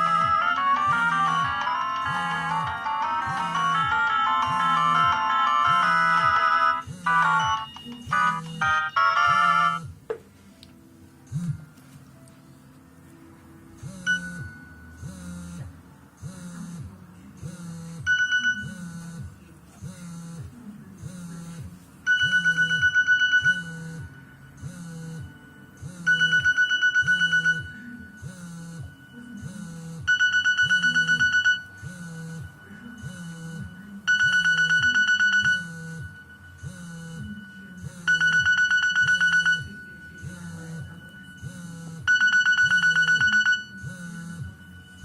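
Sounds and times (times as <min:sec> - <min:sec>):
looping electronic ringtone tune: 0:00.0 - 0:10.0, 0:13.8 - 0:15.7, 0:17.7 - 0:19.3, 0:21.1 - 0:45.0
loud trilling ring tone: 0:22.1 - 0:45.0.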